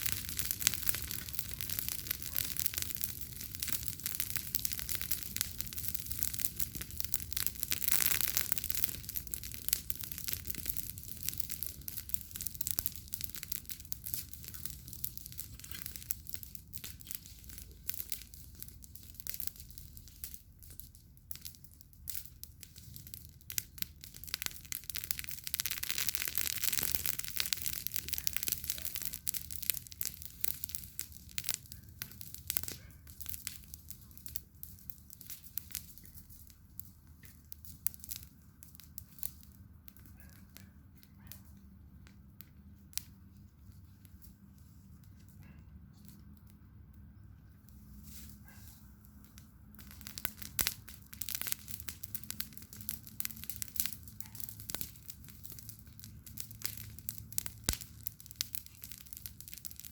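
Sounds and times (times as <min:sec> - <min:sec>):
fire hissing: 0:00.0 - 0:20.7, 0:21.3 - 0:39.6
campfire crackling: 0:00.0 - 0:59.9
fire popping: 0:00.0 - 0:59.9.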